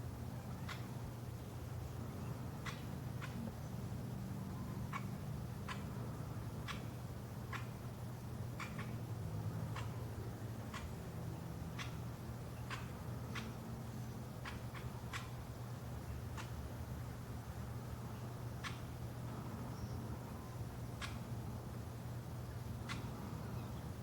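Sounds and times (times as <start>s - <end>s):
low steady hum: 0.0s - 24.0s
woodpecker sharp clicks: 6.6s - 6.9s, 7.5s - 7.7s, 8.6s - 8.9s, 9.7s - 9.9s, 11.8s - 12.0s, 14.4s - 15.3s, 22.8s - 23.1s.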